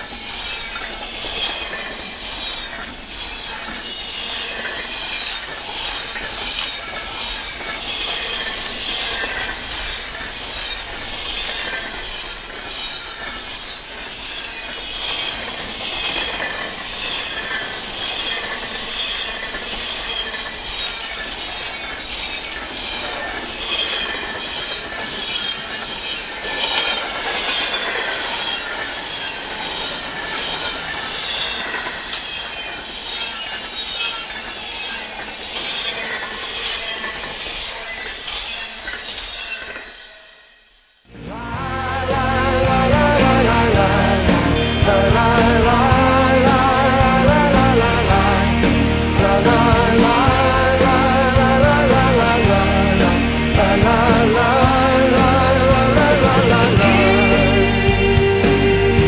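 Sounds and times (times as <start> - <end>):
freight train cars rolling: 41.1 - 59.0.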